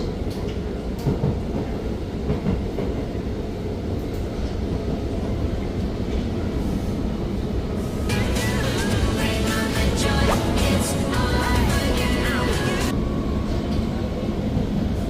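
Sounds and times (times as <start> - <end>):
train wheels rumbling on rail: 0.0 - 8.1.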